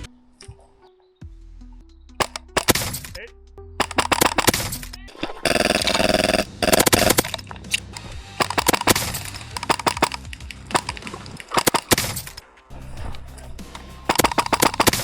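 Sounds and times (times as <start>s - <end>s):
airsoft guns firing: 2.2s - 3.2s, 3.8s - 12.4s, 14.1s - 15.0s.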